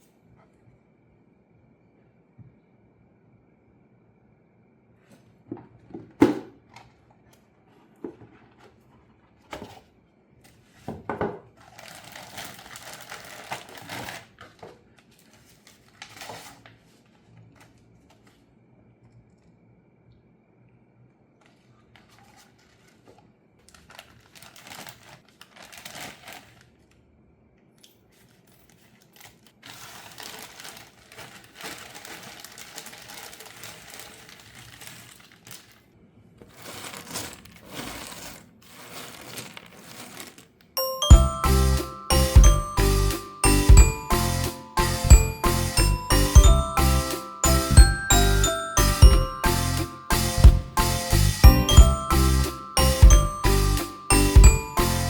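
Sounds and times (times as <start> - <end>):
plastic packaging crinkling: 11.6 - 18.4, 21.5 - 27.1, 28.0 - 41.4.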